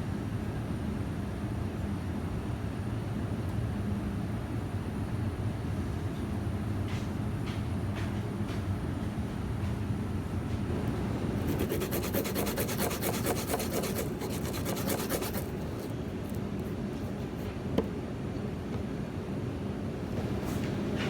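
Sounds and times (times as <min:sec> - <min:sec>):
fast rhythmic rasping strokes: 0:11.4 - 0:15.9.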